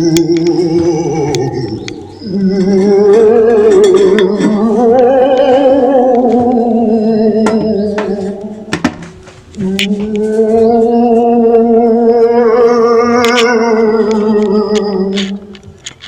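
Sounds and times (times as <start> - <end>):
sharp clicks: 0.0 - 3.3
voice humming eerie notes: 0.0 - 15.8.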